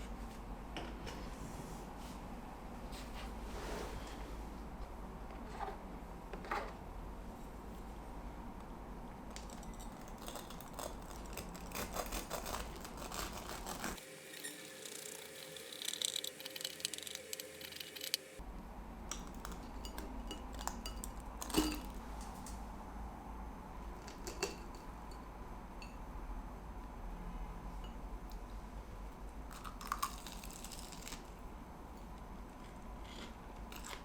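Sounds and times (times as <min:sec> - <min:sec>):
small objects clicking and clattering: 0:09.3 - 0:18.2, 0:19.1 - 0:22.0.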